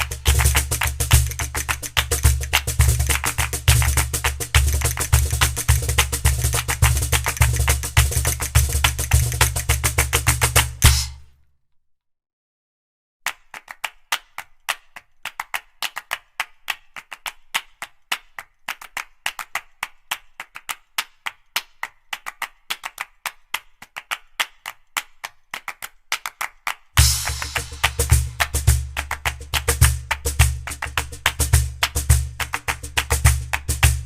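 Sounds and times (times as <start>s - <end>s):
drum beat: 0.0s - 11.3s, 27.0s - 34.0s
sharp clap-like clicks: 0.0s - 11.3s, 13.3s - 34.0s.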